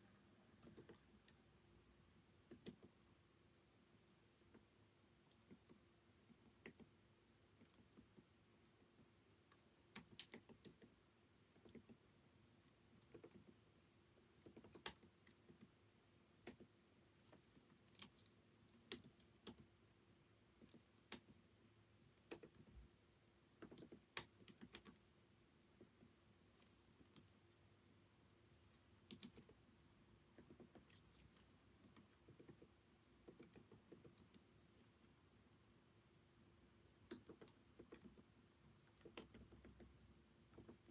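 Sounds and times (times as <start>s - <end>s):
typing on computer keyboard: 0.6s - 1.4s, 2.5s - 3.0s, 9.5s - 10.9s, 11.6s - 12.0s, 13.0s - 13.6s, 14.4s - 15.7s, 17.9s - 19.7s, 22.2s - 22.7s, 23.6s - 25.0s, 29.1s - 29.6s, 31.8s - 34.4s, 37.1s - 38.2s, 38.9s - 40.9s.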